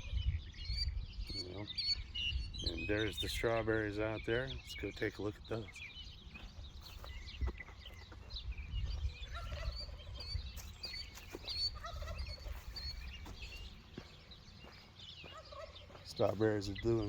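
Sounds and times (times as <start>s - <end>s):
turkeys gobbling: 11.3s - 13.1s, 15.3s - 16.1s.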